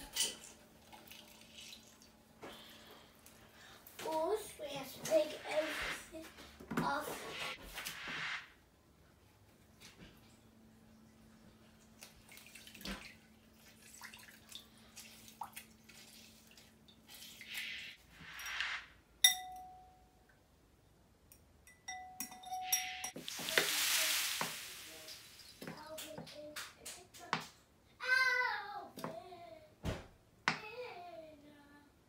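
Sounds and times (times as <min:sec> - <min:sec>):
water pouring: 0:00.4 - 0:02.2, 0:11.9 - 0:17.6, 0:23.2 - 0:25.8
sharp ringing clinks: 0:21.7 - 0:23.2.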